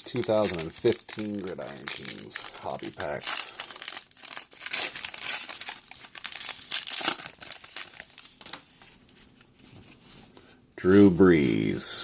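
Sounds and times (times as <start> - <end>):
foil wrapper tearing and crinkling: 0.0 - 8.8.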